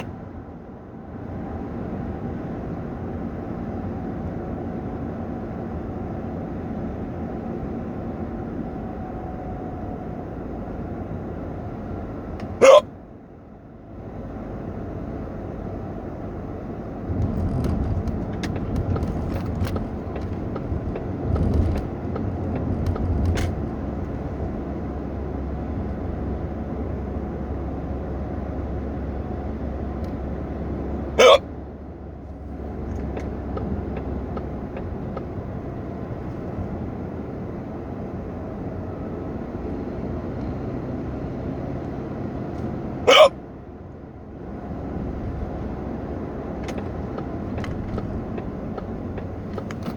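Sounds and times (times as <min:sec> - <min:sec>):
car driving low rumble: 0:00.0 - 0:49.9
person hiccuping: 0:12.6 - 0:12.9, 0:31.2 - 0:31.5, 0:43.1 - 0:43.4.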